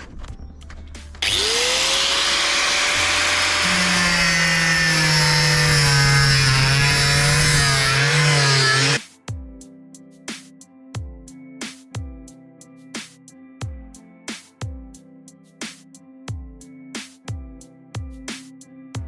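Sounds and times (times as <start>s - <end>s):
angle grinder cutting metal: 1.2s - 9.0s.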